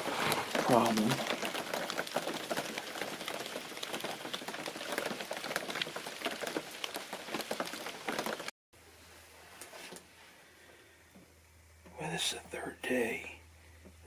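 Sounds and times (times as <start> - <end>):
rain pattering: 0.0 - 8.5.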